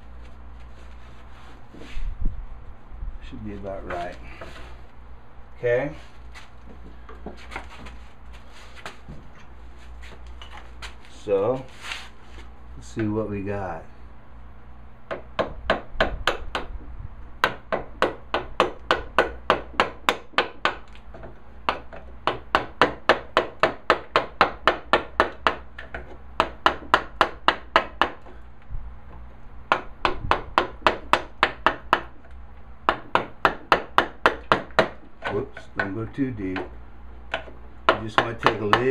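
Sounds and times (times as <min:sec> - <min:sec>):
mallet tapping chisel: 0:17.4 - 0:28.2, 0:29.7 - 0:32.2, 0:32.9 - 0:38.9.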